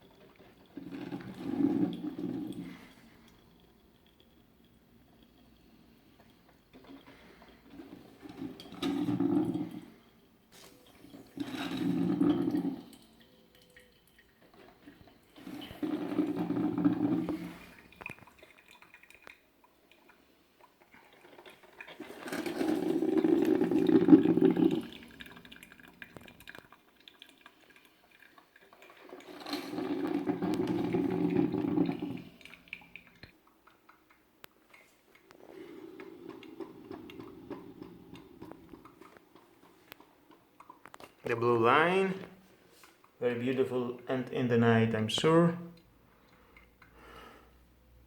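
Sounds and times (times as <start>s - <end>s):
coffee maker bubbling water: 0.0s - 48.0s.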